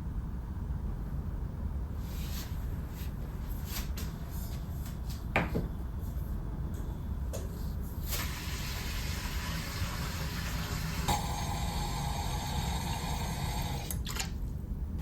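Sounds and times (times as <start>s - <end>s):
water running from a tap: 8.2s - 13.7s.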